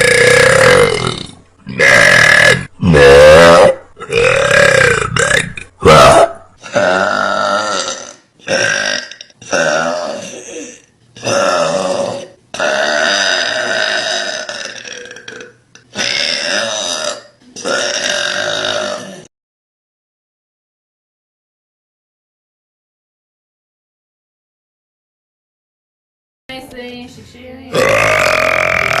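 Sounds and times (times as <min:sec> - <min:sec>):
woman burping loudly: 0:00.0 - 0:19.3, 0:27.7 - 0:29.0.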